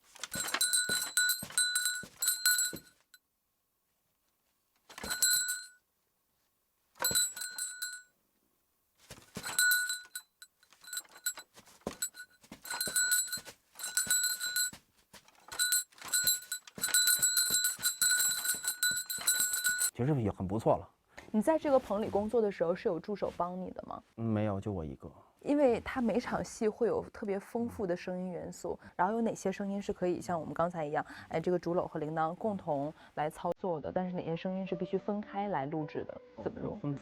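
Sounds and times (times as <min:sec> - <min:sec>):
bamboo basket rattling: 0:00.0 - 0:02.9, 0:04.9 - 0:05.7, 0:07.0 - 0:08.0, 0:09.1 - 0:19.9
small bells jingling: 0:00.2 - 0:03.1, 0:04.9 - 0:05.8, 0:07.0 - 0:08.1, 0:09.2 - 0:19.9.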